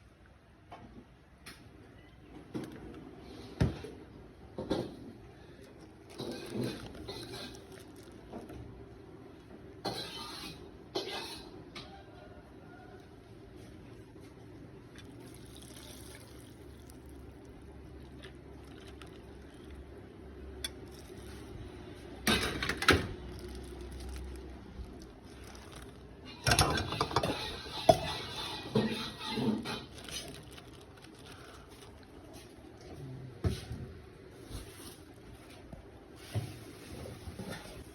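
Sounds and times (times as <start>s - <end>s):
liquid being poured: 14.9s - 20.0s, 23.2s - 32.1s
dishes clinking: 26.3s - 30.2s.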